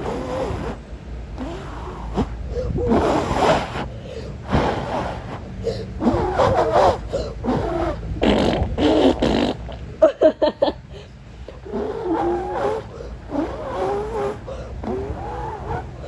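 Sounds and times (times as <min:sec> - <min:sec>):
person making breathy sputtering noises: 0:01.4 - 0:10.0.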